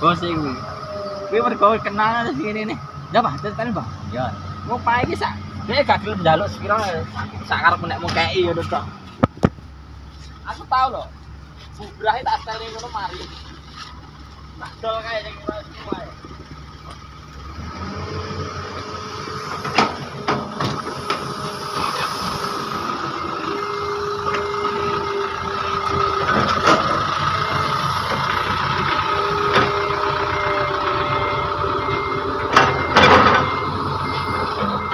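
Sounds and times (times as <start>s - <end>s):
heavy diesel machinery whine: 0.0s - 34.9s
reversing alarm beeping: 18.8s - 34.9s.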